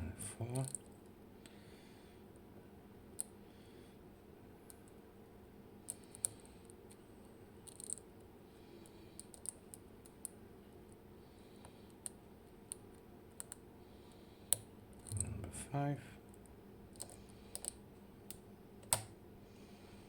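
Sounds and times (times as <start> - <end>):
lock picks clicking and scraping: 7.6 - 8.0, 16.9 - 17.8.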